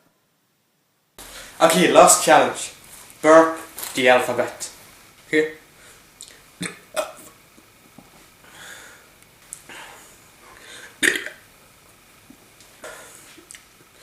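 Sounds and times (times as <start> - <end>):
man burping: 6.2 - 7.4, 11.0 - 11.4.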